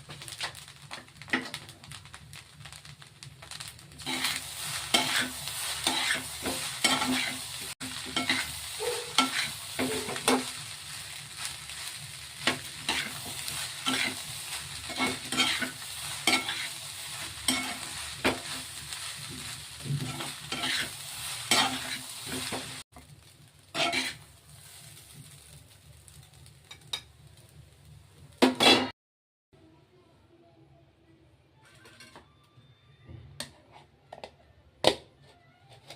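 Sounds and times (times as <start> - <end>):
rice sizzling in a pan: 0.0 - 28.9
utensil stirring and scraping: 4.0 - 22.7, 23.8 - 24.2.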